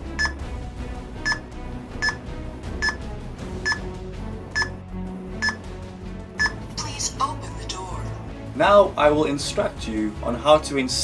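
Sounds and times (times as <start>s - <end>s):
background music: 0.0s - 11.0s
keypad beeping: 0.1s - 0.4s, 3.7s - 3.9s, 4.6s - 4.8s, 5.4s - 5.6s, 6.4s - 6.6s.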